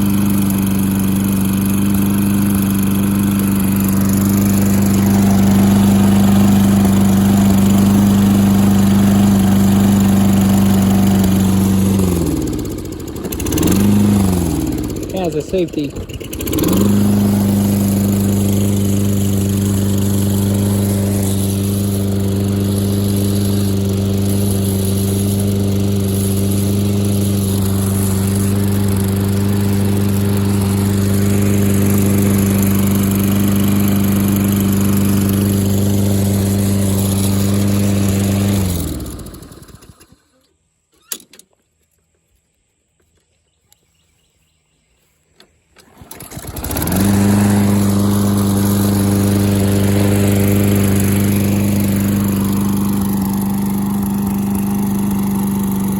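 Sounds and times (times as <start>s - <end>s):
lawn mower engine running: 0.0s - 40.4s, 45.7s - 55.9s.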